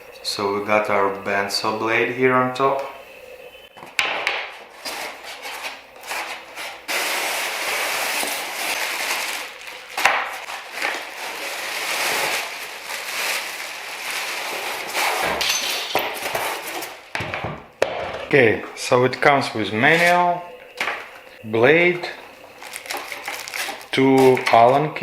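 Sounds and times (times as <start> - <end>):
packing material rustling: 4.6 - 15.4, 22.0 - 24.8.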